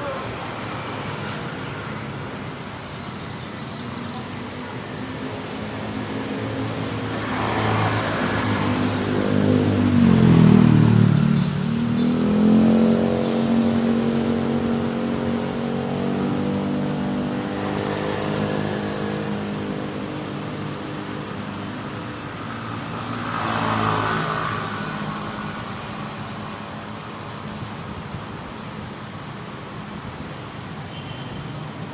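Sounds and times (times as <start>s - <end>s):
vehicles whooshing past: 5.0s - 28.0s.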